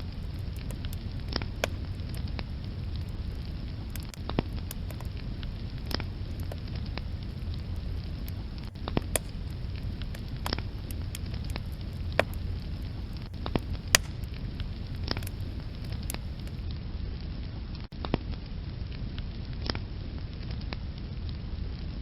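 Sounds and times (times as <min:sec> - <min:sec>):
fire flames rushing: 0:00.0 - 0:16.6
logs crackling and popping: 0:00.0 - 0:16.6.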